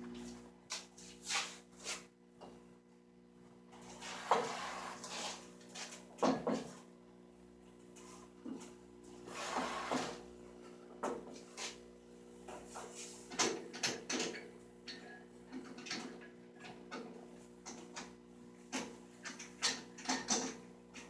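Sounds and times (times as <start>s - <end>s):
saw fence scraping slide: 3.9s - 6.0s, 9.2s - 10.2s.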